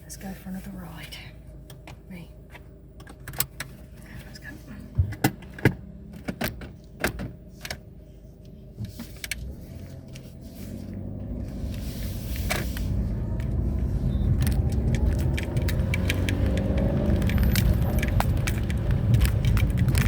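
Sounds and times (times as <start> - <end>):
road rumble: 0.0 - 20.0
car engine accelerating: 8.5 - 20.0
small clicks and rattles: 14.4 - 20.0.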